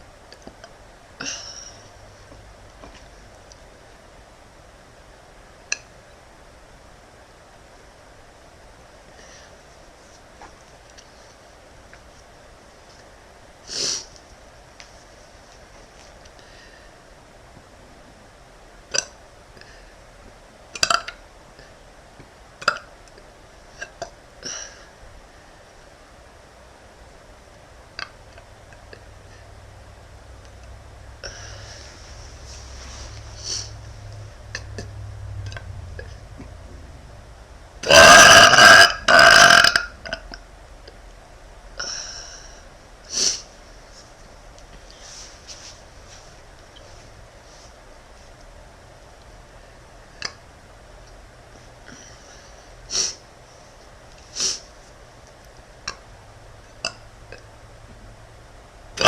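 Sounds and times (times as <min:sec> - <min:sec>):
girl burping: 0:37.8 - 0:40.3.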